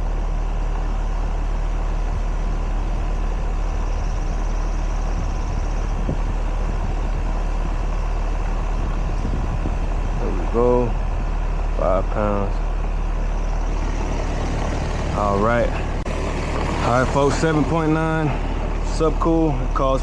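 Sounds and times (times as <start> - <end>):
compressor hum: 0.0 - 20.0
condenser fan whoosh: 13.7 - 19.3.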